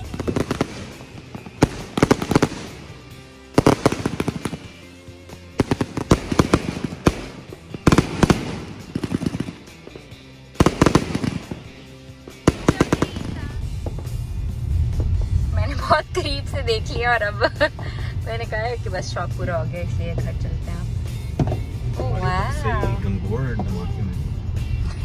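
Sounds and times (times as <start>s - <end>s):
fireworks cracking and banging: 0.0s - 14.2s.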